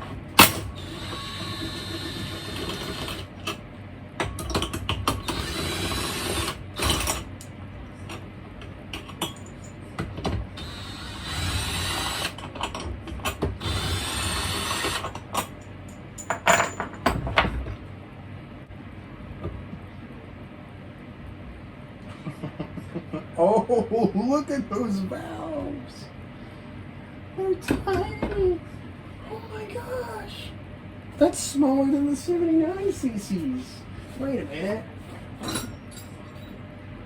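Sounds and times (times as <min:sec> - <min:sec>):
tools clinking: 0:35.4 - 0:36.5.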